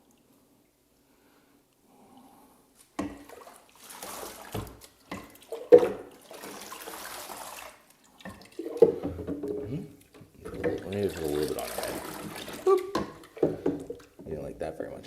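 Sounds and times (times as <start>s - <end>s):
water splashing in a sink: 2.9s - 14.4s.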